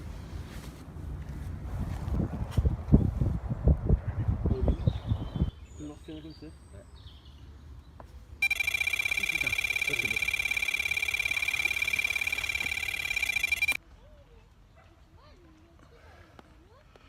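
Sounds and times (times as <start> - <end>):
high-pitched bite alarm beeps: 8.4 - 13.8.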